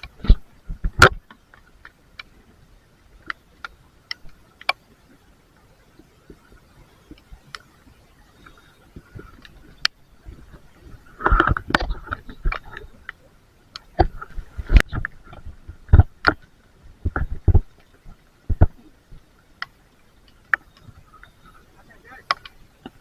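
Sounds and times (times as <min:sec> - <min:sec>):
faint high hum: 0:00.0 - 0:23.0
irregular knocks and thumps: 0:14.0 - 0:16.4, 0:17.0 - 0:18.9.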